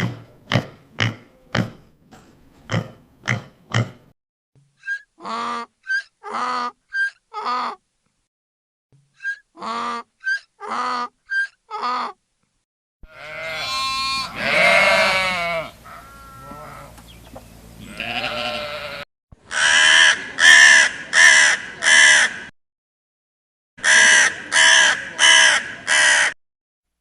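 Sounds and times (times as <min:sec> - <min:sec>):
farm animal bleating: 0:13.0 - 0:17.0, 0:17.8 - 0:20.6
crow cawing: 0:19.5 - 0:22.5, 0:23.8 - 0:26.4.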